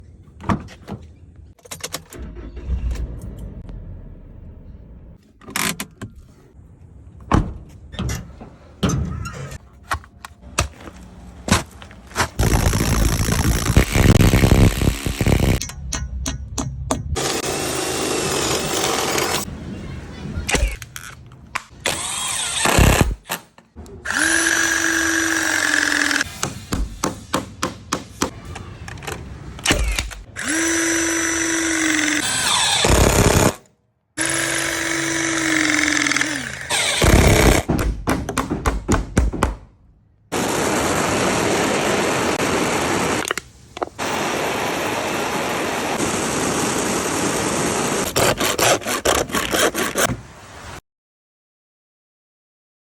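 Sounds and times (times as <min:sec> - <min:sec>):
power drill running: 0:12.4 - 0:15.6, 0:24.1 - 0:26.3, 0:30.4 - 0:33.6, 0:34.2 - 0:37.7.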